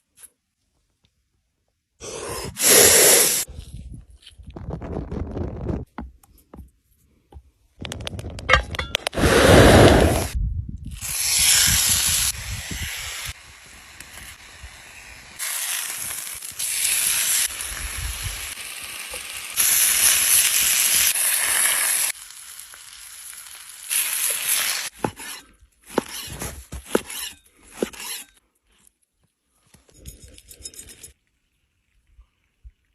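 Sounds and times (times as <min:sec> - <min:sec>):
meat sizzling: 0:13.0 - 0:24.9.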